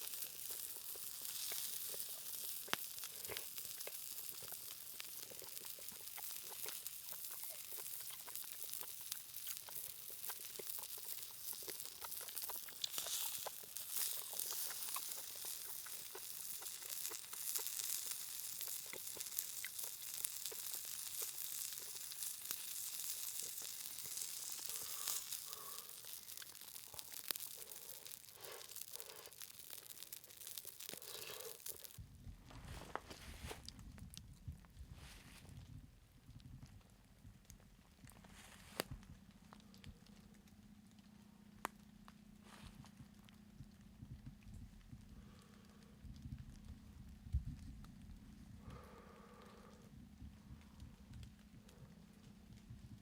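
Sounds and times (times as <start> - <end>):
campfire crackling: 0.0 - 32.0, 37.4 - 53.0
meat sizzling on hot stone: 0.0 - 32.0.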